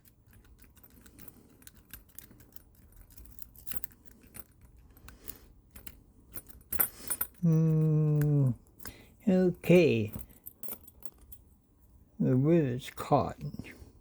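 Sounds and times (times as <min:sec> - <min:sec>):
lock pick clicking and scraping: 0:00.0 - 0:09.0, 0:10.1 - 0:11.4.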